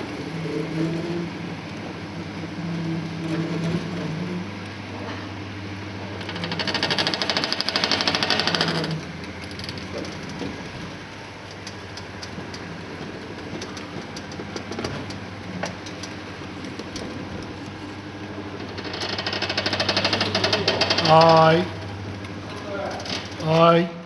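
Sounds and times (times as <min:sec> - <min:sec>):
gear motor humming: 0:00.0 - 0:23.8
rapid clattering: 0:18.5 - 0:21.3.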